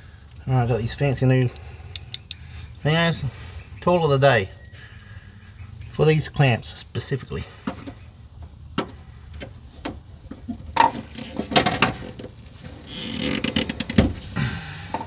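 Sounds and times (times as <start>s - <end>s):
hand tools clicking and clattering: 1.3s - 3.9s, 7.4s - 15.0s.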